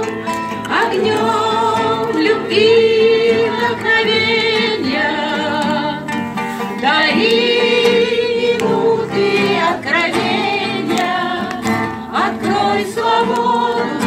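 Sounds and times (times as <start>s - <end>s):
group singing an anthem: 0.0s - 14.0s.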